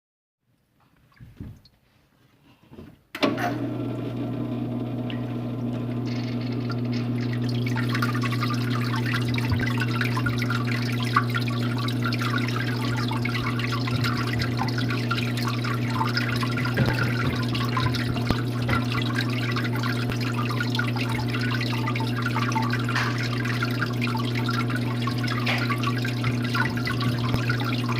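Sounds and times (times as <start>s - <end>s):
water falling and splashing: 6.9s - 27.9s.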